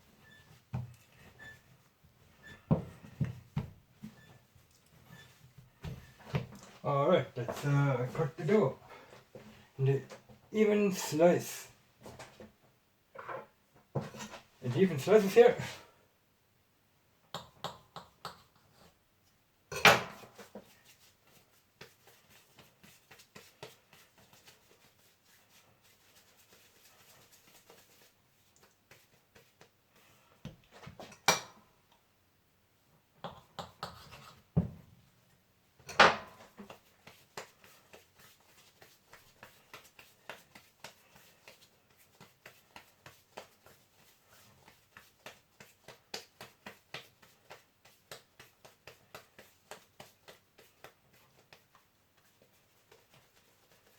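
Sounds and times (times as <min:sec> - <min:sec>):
knife cutting dough on board: 0:33.2 - 0:34.7.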